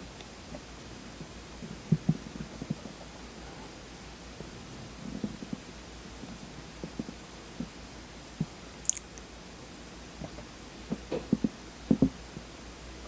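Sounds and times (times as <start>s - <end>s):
mouth smacks while eating: 8.8s - 9.3s
sharp high click: 8.8s - 9.3s.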